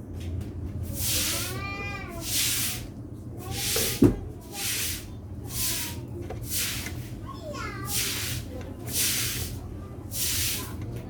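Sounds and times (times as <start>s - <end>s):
short hissing bursts: 7.9s - 10.8s.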